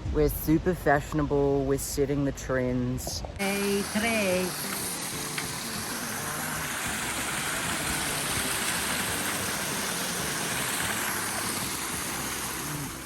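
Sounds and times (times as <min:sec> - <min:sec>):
mountain stream flowing: 0:03.3 - 0:13.0.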